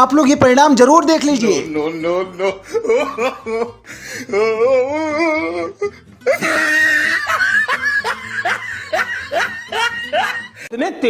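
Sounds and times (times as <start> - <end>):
laughter: 2.6 - 3.8, 6.2 - 10.6.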